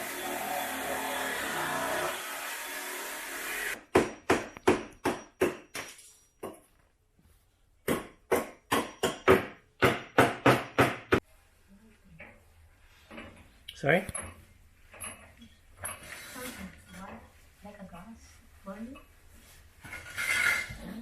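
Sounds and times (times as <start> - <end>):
power saw cutting brick: 0.0 - 3.8.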